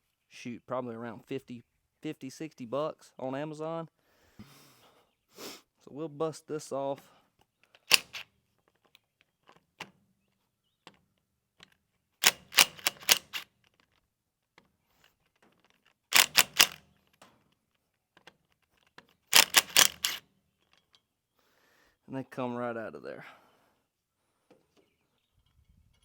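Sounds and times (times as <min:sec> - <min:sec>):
impact wrench hammering: 0:16.2 - 0:16.8, 0:19.4 - 0:20.2.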